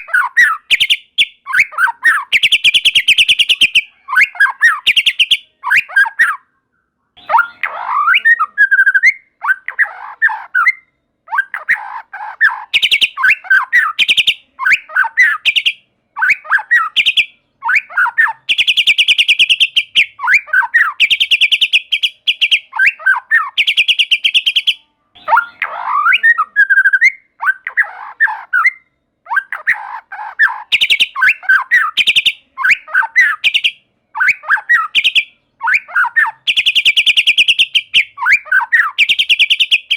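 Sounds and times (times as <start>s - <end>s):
bird singing with trills: 0.0s - 39.9s.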